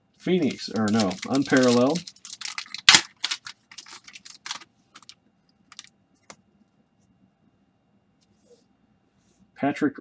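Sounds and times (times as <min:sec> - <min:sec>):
trading cards clicking and rustling: 0:00.4 - 0:06.4.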